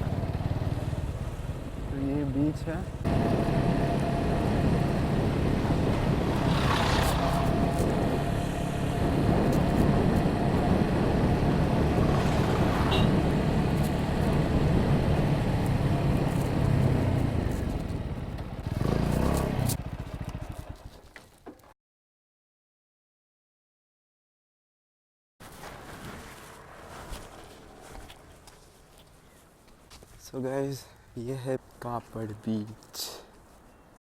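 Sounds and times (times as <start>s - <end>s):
motorcycle engine running: 0.0s - 21.1s
rush of noise: 3.1s - 16.3s.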